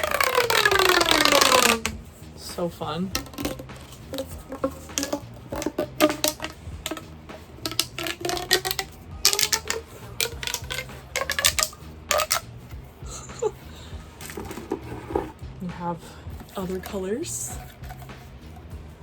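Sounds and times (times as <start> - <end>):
plastic pop tubes clicking and snapping: 0.0 - 12.4, 14.2 - 14.8.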